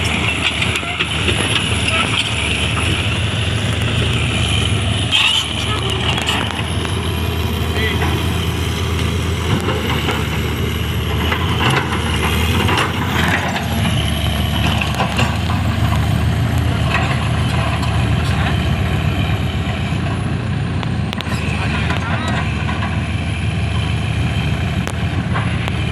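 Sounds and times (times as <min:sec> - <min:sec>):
knocks and clatters: 0:00.0 - 0:07.0, 0:07.9 - 0:18.7
heavy diesel engines running: 0:00.0 - 0:25.9.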